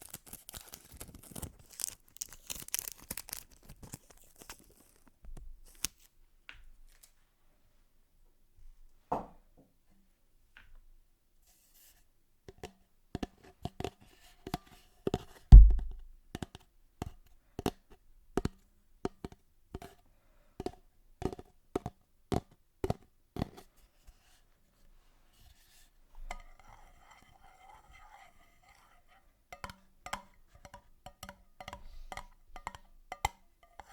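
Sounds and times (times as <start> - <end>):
heavy deep thump: 15.5 - 16.1
sharp taps on hard object: 15.5 - 16.1.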